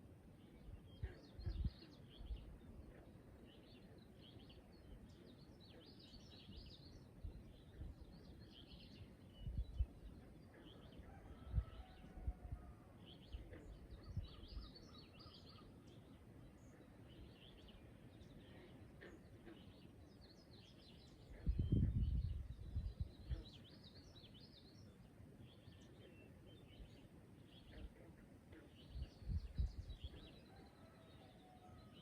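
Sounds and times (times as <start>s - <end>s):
birds chirping: 13.0s - 32.0s.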